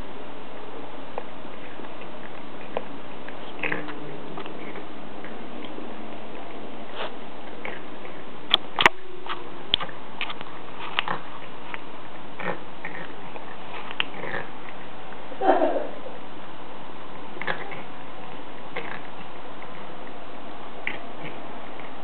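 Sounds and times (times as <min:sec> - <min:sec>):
cat snorting and snuffling: 0:03.4 - 0:04.9, 0:06.9 - 0:07.9, 0:12.4 - 0:14.7, 0:17.4 - 0:17.9, 0:18.7 - 0:19.1, 0:20.8 - 0:21.9.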